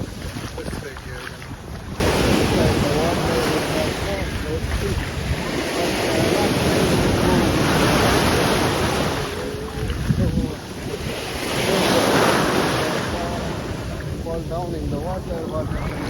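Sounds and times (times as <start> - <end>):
sea waves breaking: 0.0 - 16.0
wind buffeting microphone: 0.0 - 16.0.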